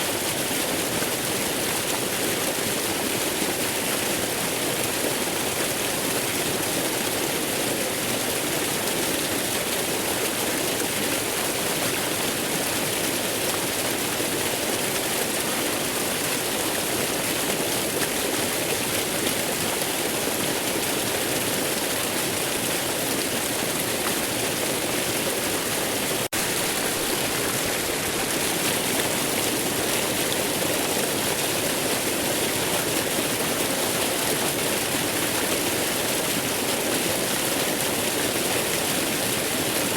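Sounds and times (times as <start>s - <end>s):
waterfall rushing: 25.5s - 37.0s.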